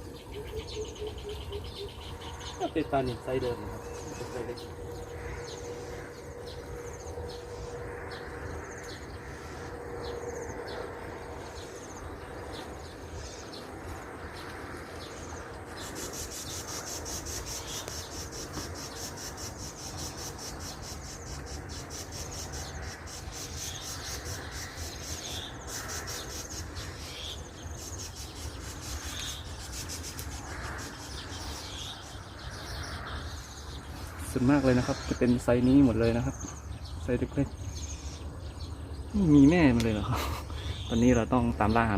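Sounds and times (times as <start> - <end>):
steady low rumble: 0.0 - 41.9
fast-pulsing insect buzz: 15.2 - 34.2.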